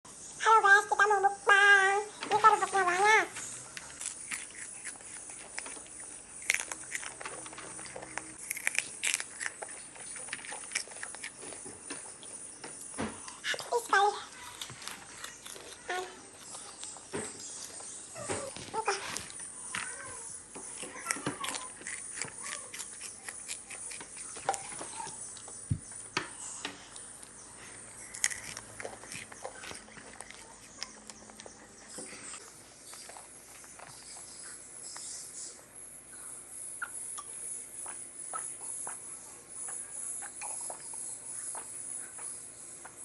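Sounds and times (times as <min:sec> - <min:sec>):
chewing crunchy food: 0:02.1 - 0:35.1.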